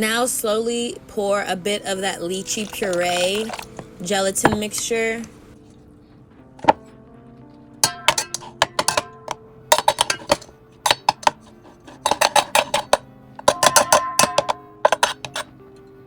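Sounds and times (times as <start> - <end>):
soft lo-fi music: 0.0 - 16.0
utensils clinking against dishes: 2.4 - 4.9, 6.6 - 6.8, 7.8 - 15.6.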